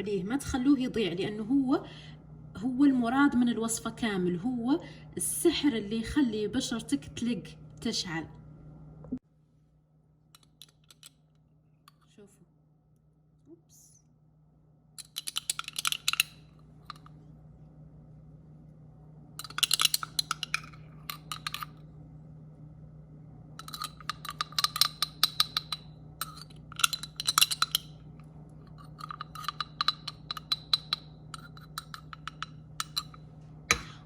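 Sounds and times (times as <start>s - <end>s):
spoon scraping a bowl: 23.6s - 27.9s, 28.6s - 33.2s.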